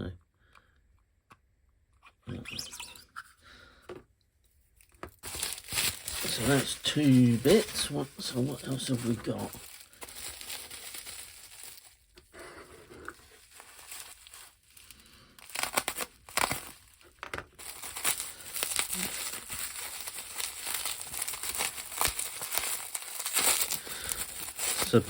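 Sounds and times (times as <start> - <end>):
packaging crinkling: 5.0 - 25.0.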